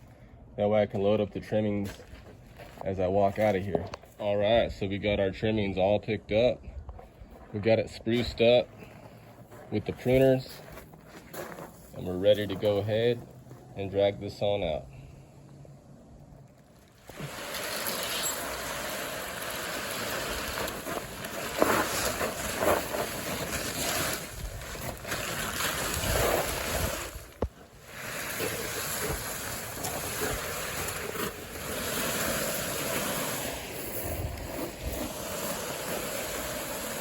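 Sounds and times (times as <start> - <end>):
tarp dragged over ground: 17.0 - 37.0.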